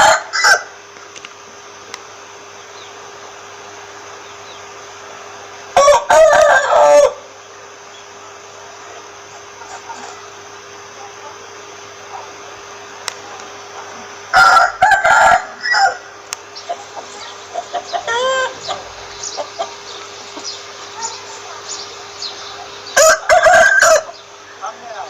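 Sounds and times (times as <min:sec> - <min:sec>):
rooster crowing: 0:00.0 - 0:00.8, 0:05.8 - 0:07.3, 0:14.3 - 0:16.2, 0:17.7 - 0:18.9, 0:22.9 - 0:24.3
hens clucking: 0:08.8 - 0:12.6, 0:15.6 - 0:24.6.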